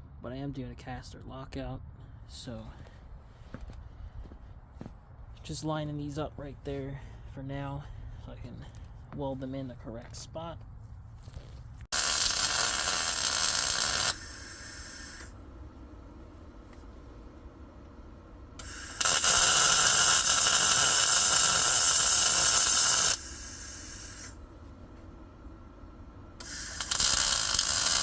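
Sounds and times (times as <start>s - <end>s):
welder hissing: 11.9s - 15.4s, 18.6s - 24.4s, 26.4s - 28.0s.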